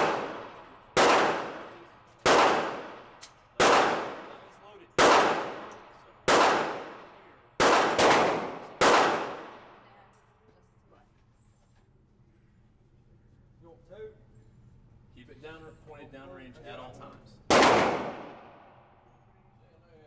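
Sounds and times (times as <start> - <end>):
handgun shots echoing: 0.0 - 4.4, 5.0 - 9.8, 17.5 - 18.7.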